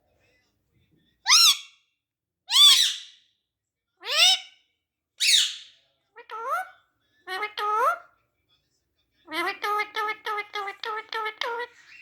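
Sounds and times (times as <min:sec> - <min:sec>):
parrot calling: 0:01.3 - 0:01.8, 0:02.5 - 0:03.2, 0:04.0 - 0:04.6, 0:05.2 - 0:08.1, 0:09.3 - 0:12.0.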